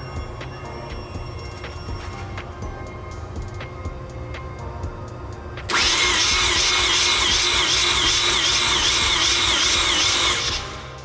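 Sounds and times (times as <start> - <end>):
starter cranking engine: 5.7 - 11.0.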